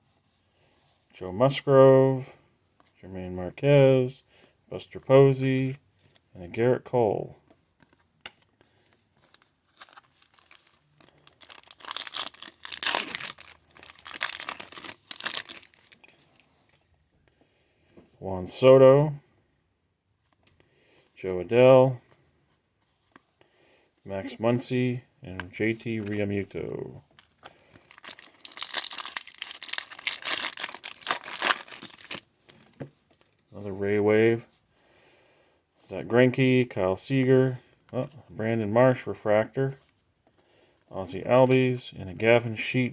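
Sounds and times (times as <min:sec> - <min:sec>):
foil wrapper tearing and crinkling: 0:09.6 - 0:16.5, 0:27.2 - 0:32.7.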